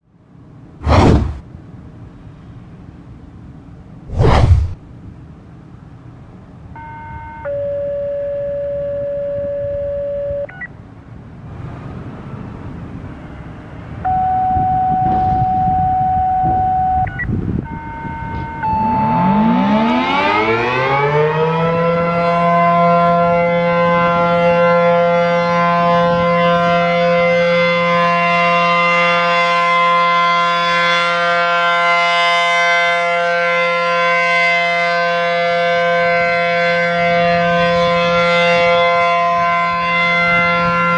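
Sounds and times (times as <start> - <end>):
outdoor warning siren: 6.7 - 10.5, 14.0 - 40.9.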